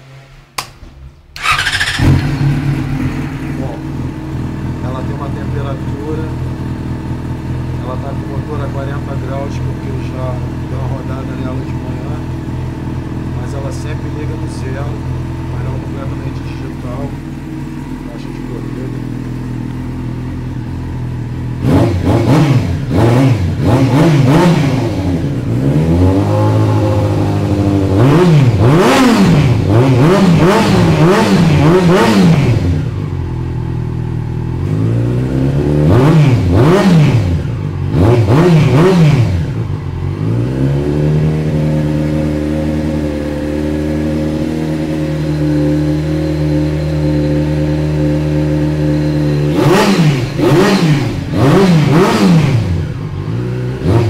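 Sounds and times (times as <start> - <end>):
motorcycle engine revving: 0.0 - 54.0
motorcycle engine idling: 1.0 - 53.8.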